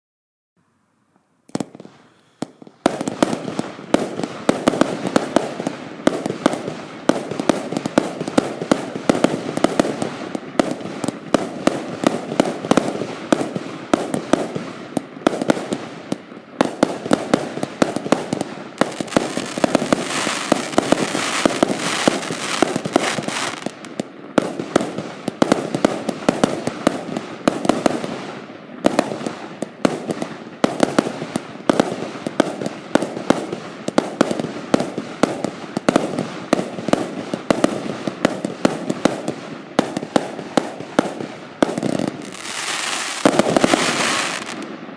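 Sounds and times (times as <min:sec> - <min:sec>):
firework crack: 0:01.4 - 0:44.9
firework bangs and crackles: 0:01.5 - 0:44.9
hissing crackle: 0:18.6 - 0:24.1.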